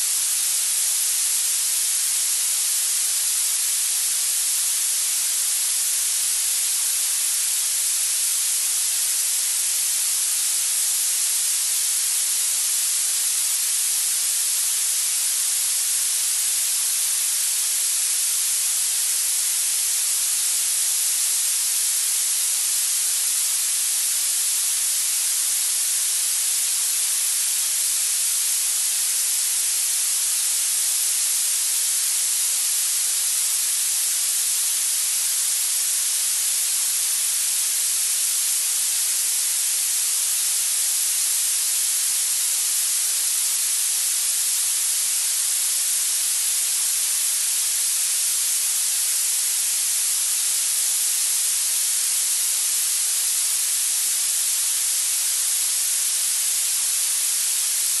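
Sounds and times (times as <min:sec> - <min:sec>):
steady high hiss: 0:00.0 - 0:58.0.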